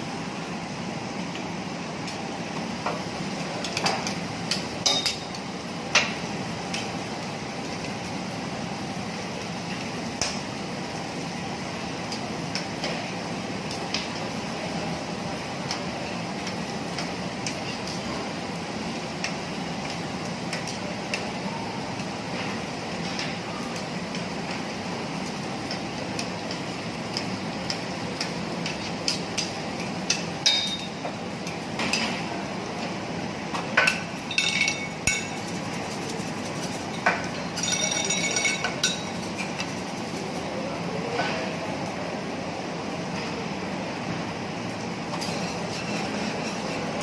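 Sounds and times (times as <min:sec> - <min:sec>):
metal spatulas clanging on griddle: 0:04.5 - 0:05.4, 0:30.1 - 0:31.0, 0:33.8 - 0:35.4, 0:37.1 - 0:39.1, 0:45.2 - 0:47.0
griddle hiss: 0:44.2 - 0:47.0.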